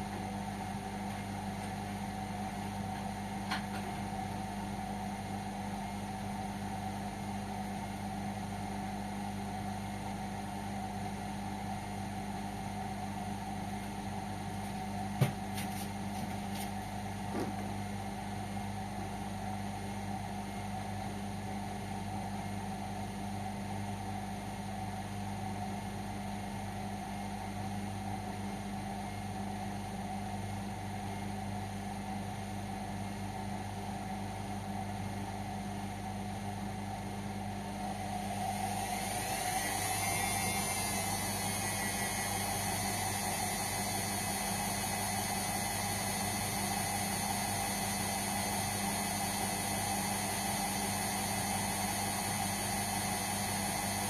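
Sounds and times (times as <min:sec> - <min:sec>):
washing machine motor hum: 0:00.0 - 0:54.0.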